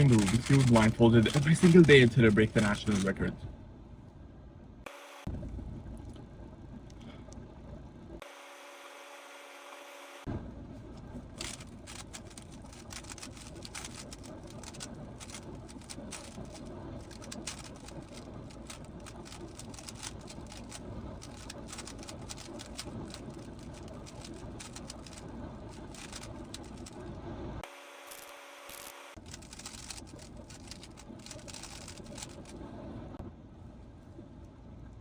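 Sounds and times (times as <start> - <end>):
puzzle cube clicking and clacking: 0.0 - 3.2, 11.4 - 27.0, 29.2 - 32.6.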